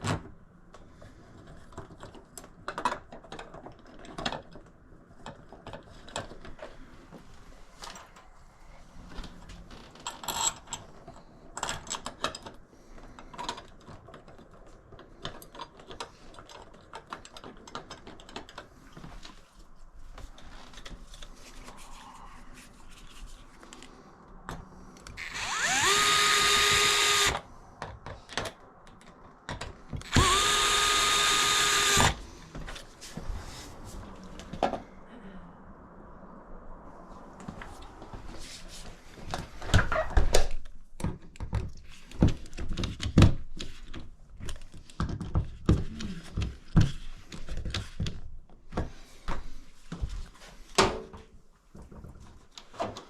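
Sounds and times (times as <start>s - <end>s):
power drill whining: 25.2s - 27.4s, 30.0s - 32.2s.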